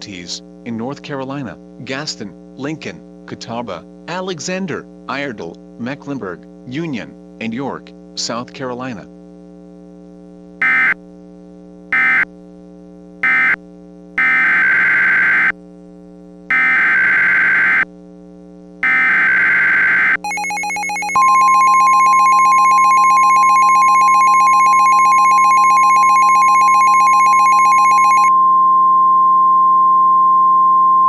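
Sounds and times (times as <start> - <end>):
warning alarm tone: 10.6 - 11.0, 12.0 - 12.3, 13.2 - 13.6, 14.2 - 15.5, 16.5 - 17.9, 18.8 - 31.0
buzzy tone: 16.5 - 17.9, 18.8 - 31.0
weather radio data bursts: 18.8 - 28.3.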